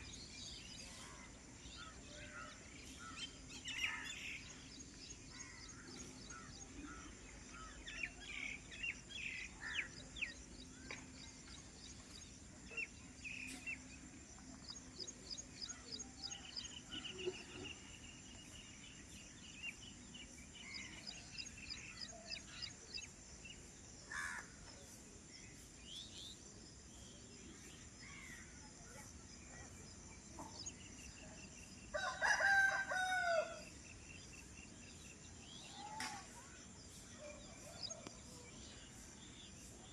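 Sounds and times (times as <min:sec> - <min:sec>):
rooster crowing: 0:31.9 - 0:33.7.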